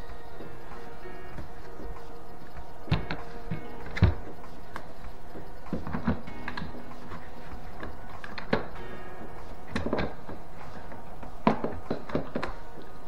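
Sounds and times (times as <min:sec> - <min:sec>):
plastic parts clicking and knocking: 0:00.0 - 0:08.8, 0:09.7 - 0:13.0
background music: 0:00.0 - 0:13.0.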